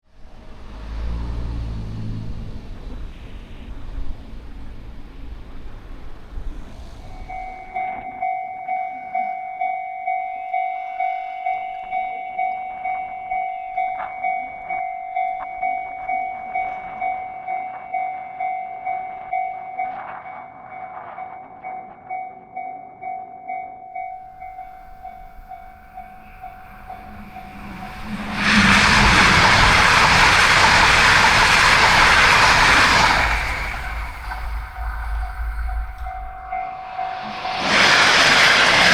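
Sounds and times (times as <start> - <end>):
low rumbling noise: 0.1 - 7.9, 24.2 - 38.9
train rushing past: 0.1 - 8.4, 10.0 - 23.1, 24.0 - 38.9
crossing warning bell clanging: 7.1 - 38.9.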